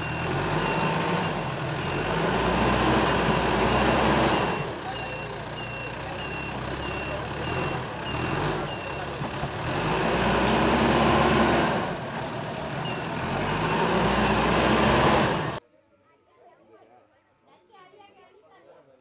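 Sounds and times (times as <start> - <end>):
reversing alarm beeping: 0.0 - 9.2
heavy vehicle engine revving: 0.0 - 15.6.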